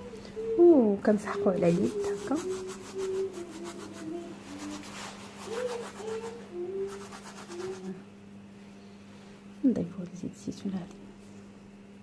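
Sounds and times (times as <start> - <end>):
steady low hum: 0.0 - 12.0
hands rubbing together: 1.6 - 8.0.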